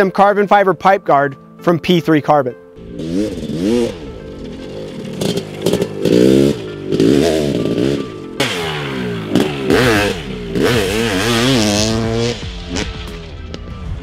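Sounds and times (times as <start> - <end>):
two-stroke motorcycle engine revving: 2.8 - 13.3.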